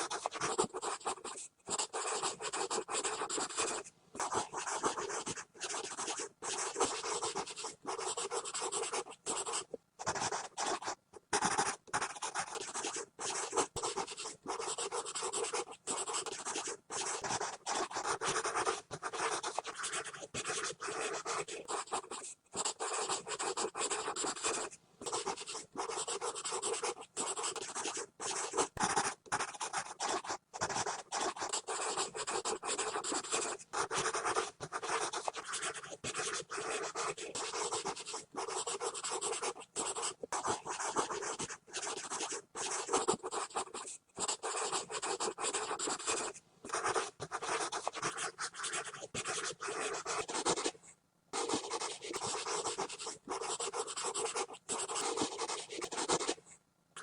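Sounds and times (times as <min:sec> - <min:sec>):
pencil scribbling on paper: 0:00.0 - 0:50.8, 0:51.4 - 0:56.4.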